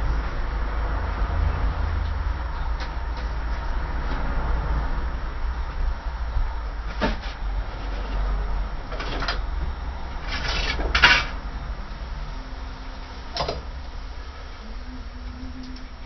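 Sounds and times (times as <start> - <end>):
steady low hum: 0.0 - 16.0
scrapes and knocks: 6.9 - 9.4, 10.2 - 11.4.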